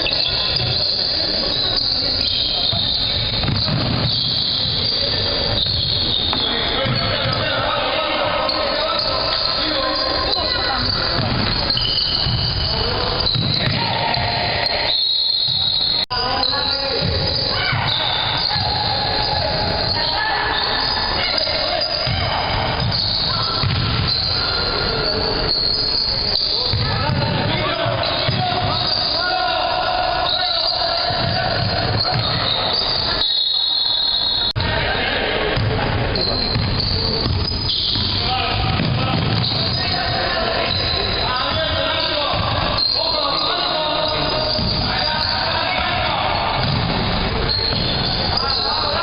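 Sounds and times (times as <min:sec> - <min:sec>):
shoes squeaking on gym court: 0:00.0 - 0:29.5, 0:30.2 - 0:34.6, 0:36.0 - 0:49.0
basketball bouncing: 0:02.2 - 0:04.9, 0:05.6 - 0:07.6, 0:10.3 - 0:20.0, 0:21.8 - 0:24.8, 0:26.4 - 0:29.1, 0:31.0 - 0:33.0, 0:35.5 - 0:42.9, 0:44.2 - 0:48.6.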